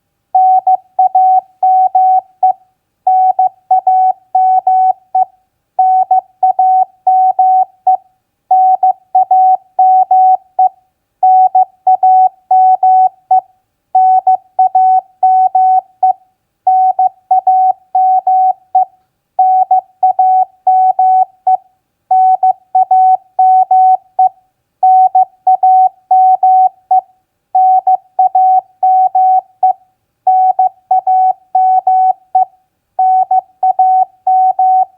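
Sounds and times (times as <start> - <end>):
morse code beeps: 30.3 - 34.9.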